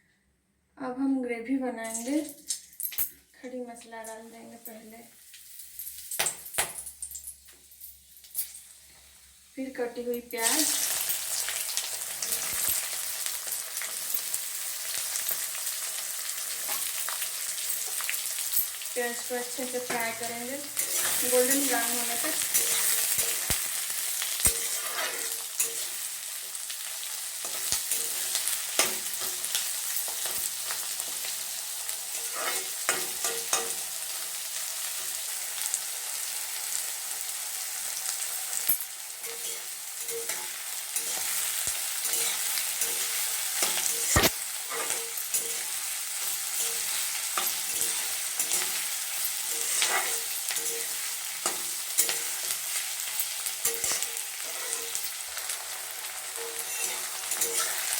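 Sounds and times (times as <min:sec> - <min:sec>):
onions sizzling in oil: 0:03.8 - 0:57.9
spoon scraping and tapping pan: 0:19.8 - 0:26.0, 0:27.4 - 0:31.3, 0:32.1 - 0:33.8, 0:38.6 - 0:55.5, 0:56.3 - 0:57.9.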